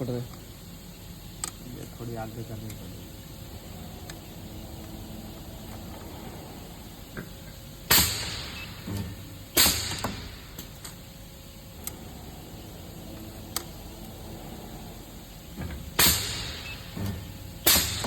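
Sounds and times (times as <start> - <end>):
welding machine noise bursts: 7.8 - 14.1, 15.2 - 18.0.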